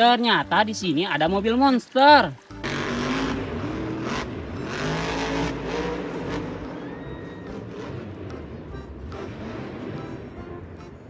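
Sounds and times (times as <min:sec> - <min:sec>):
car engine revving: 0:02.6 - 0:11.0.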